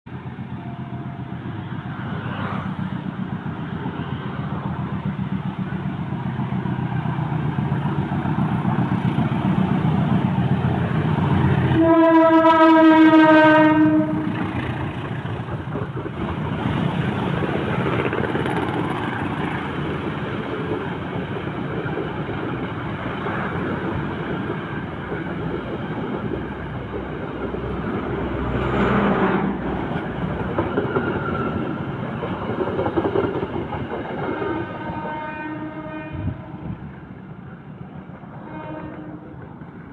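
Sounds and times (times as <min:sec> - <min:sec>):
train rumbling: 0:00.1 - 0:39.9
train horn blast: 0:11.7 - 0:14.4, 0:34.4 - 0:36.8, 0:38.4 - 0:39.4.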